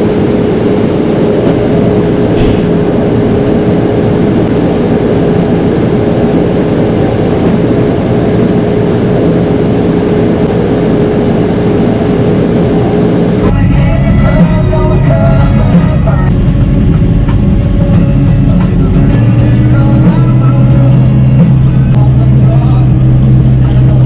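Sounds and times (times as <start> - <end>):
engine drone: 0.0 - 24.0
mid-pitched machine whine: 0.0 - 24.0.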